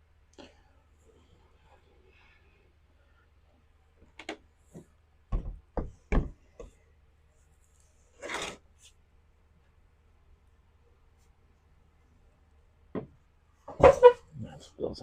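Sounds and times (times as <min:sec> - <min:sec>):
brief scrape: 0:08.1 - 0:08.6.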